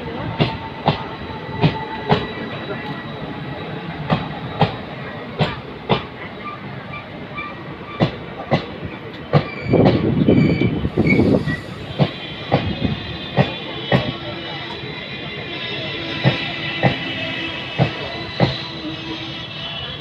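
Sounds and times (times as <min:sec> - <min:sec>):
train rumble: 0:00.0 - 0:20.0
train wheels clacking over rail joints: 0:07.9 - 0:10.2, 0:11.1 - 0:14.8, 0:16.1 - 0:18.7.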